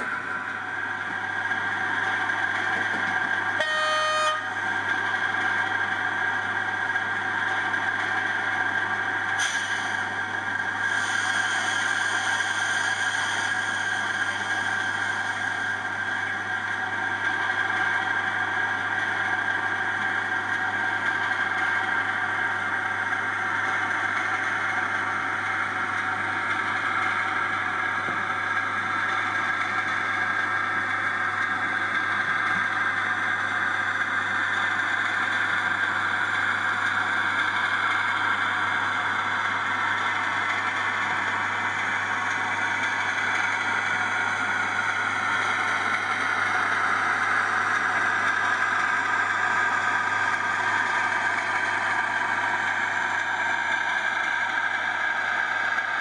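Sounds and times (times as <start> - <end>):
diesel engine through small speaker: 0.0 - 1.0.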